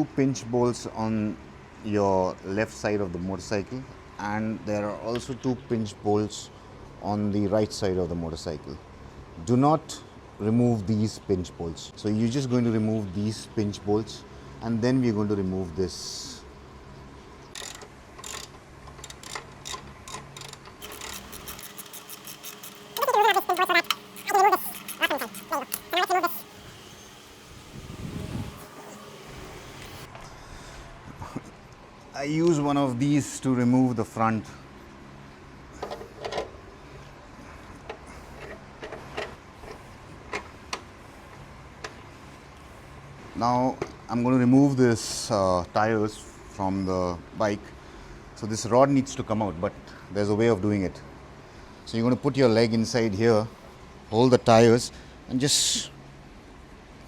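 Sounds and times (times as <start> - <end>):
ratchet wrench clicking: 17.6 - 27.1.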